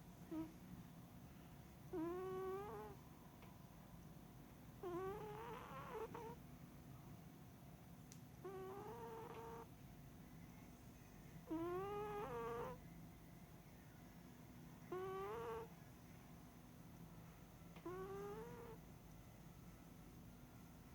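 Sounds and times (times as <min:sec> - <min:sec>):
cat snoring: 0:00.3 - 0:00.5, 0:01.9 - 0:03.0, 0:04.8 - 0:06.4, 0:08.4 - 0:09.7, 0:11.4 - 0:12.8, 0:14.9 - 0:15.7, 0:17.8 - 0:18.8.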